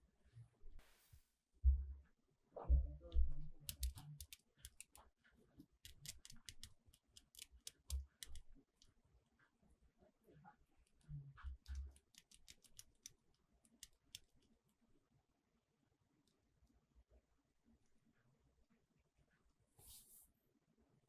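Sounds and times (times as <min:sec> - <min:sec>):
plastic clicks and snips: 0:03.6 - 0:05.0, 0:05.8 - 0:08.9, 0:11.5 - 0:14.5.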